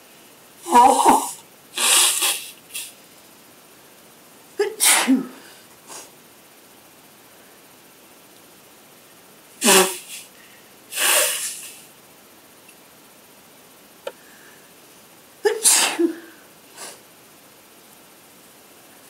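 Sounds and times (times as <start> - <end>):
person sneezing: 0.6 - 2.9, 4.6 - 6.1, 9.6 - 10.3, 10.9 - 11.8, 15.4 - 17.0.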